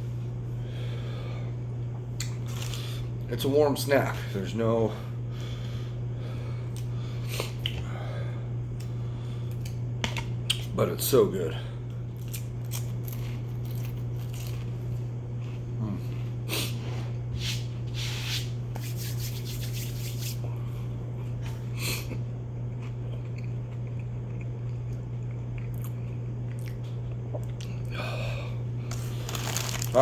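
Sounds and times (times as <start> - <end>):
chewing and crunching cracker: 2.2 - 3.0, 11.9 - 16.5, 21.2 - 27.9, 28.9 - 30.0.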